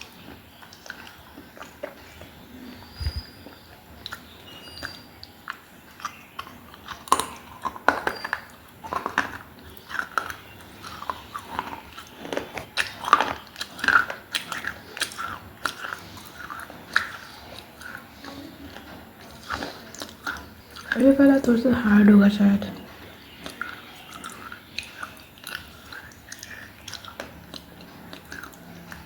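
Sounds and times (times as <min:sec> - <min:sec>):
clay crunching between teeth: 0:00.0 - 0:21.5, 0:22.8 - 0:29.0.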